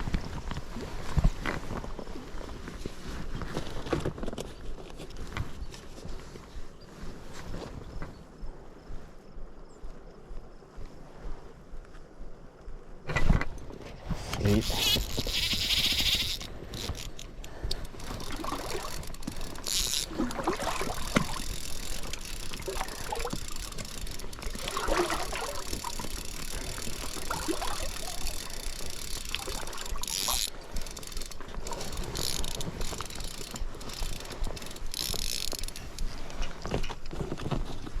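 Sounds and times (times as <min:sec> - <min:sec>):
water lapping and gurgling: 0:14.5 - 0:36.4.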